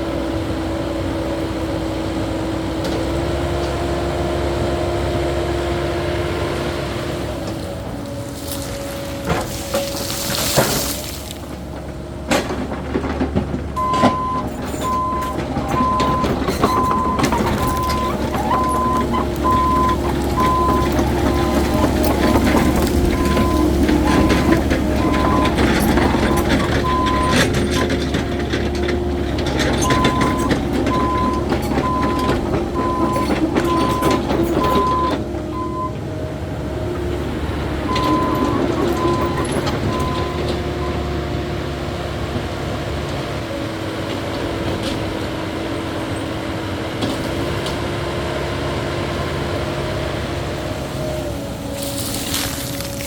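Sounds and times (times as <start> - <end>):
excavator diesel engine and hydraulics: 0.0 - 53.0
dirt and rock clattering: 7.2 - 45.5, 47.0 - 53.0
regular beeping: 13.8 - 36.0.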